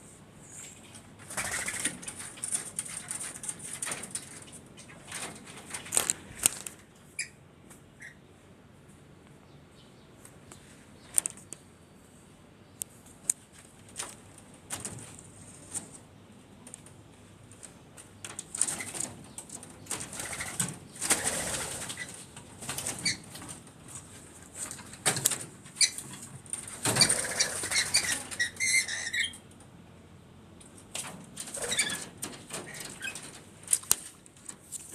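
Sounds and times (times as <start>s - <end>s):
bird wings flapping: 1.2s - 6.8s, 18.5s - 23.7s.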